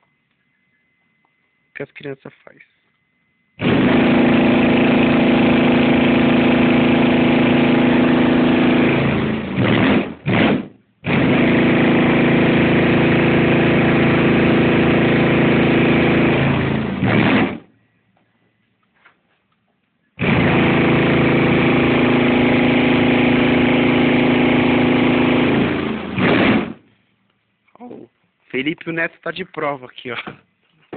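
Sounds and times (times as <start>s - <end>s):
short bass blasts: 3.6s - 17.7s, 20.2s - 26.9s.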